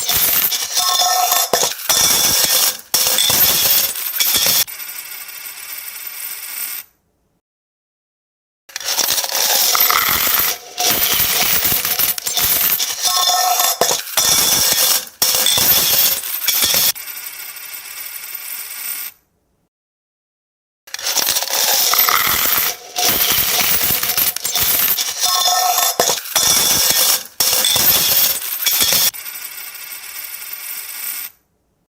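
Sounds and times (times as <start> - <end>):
coins falling and clinking: 0.0 - 4.7, 8.8 - 17.0, 21.0 - 29.2.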